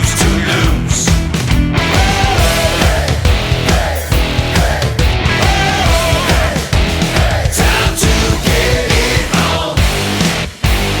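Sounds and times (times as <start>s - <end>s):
rock music with heavy drums: 0.0s - 11.0s.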